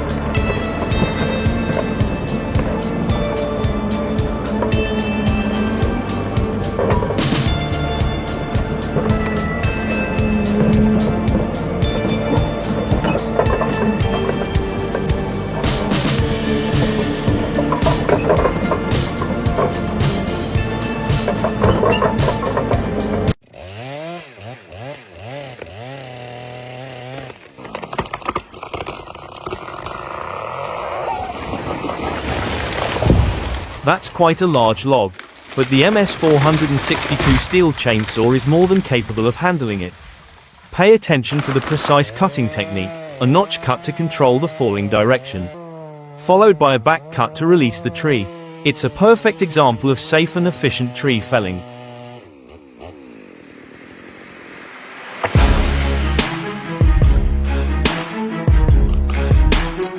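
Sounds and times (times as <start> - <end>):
rough crackling with sharp clicks: 0.0 - 23.4, 27.1 - 30.8, 32.1 - 46.3, 57.8 - 59.9
chainsaw revving: 0.0 - 33.0, 33.8 - 39.8, 41.3 - 59.9.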